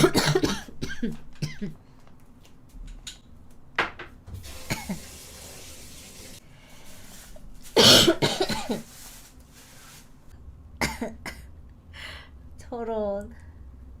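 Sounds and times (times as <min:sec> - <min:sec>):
woman coughing: 0:00.0 - 0:01.8, 0:07.8 - 0:08.8, 0:10.8 - 0:11.5.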